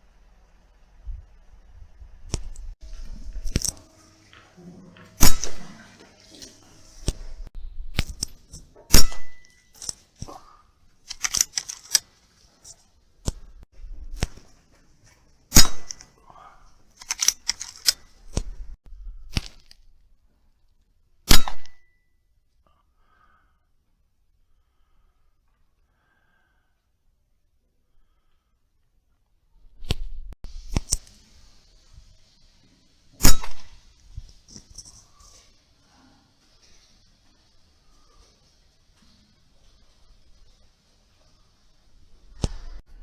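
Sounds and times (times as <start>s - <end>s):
rifle shots: 5.2s - 5.8s, 8.9s - 9.5s, 15.5s - 16.0s, 21.3s - 21.8s.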